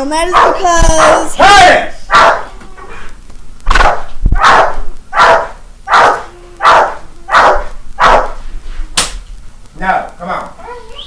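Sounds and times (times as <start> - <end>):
dog barking: 0.3 - 1.4, 2.1 - 2.5, 3.7 - 8.4.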